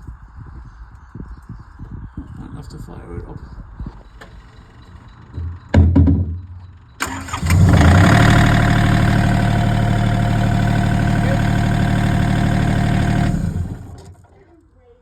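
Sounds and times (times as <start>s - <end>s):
thump: 5.4s - 6.4s
heavy machine engine running: 7.0s - 14.4s.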